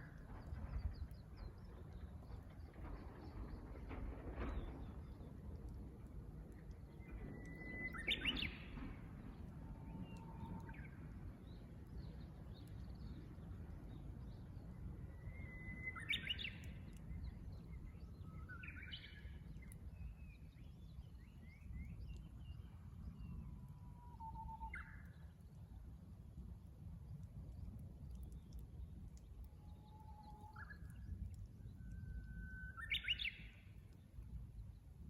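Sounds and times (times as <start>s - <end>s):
low background rumble: 0.0s - 35.0s
bird whistling song: 7.0s - 11.0s, 15.1s - 19.4s, 21.0s - 25.2s, 29.8s - 33.8s.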